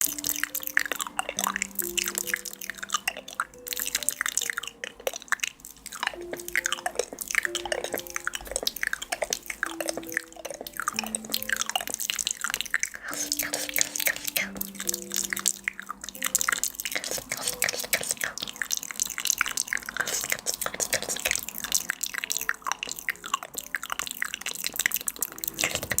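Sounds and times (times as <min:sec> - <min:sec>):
soft melody of held notes: 0:00.0 - 0:26.0
wet clicks and drips: 0:00.0 - 0:26.0.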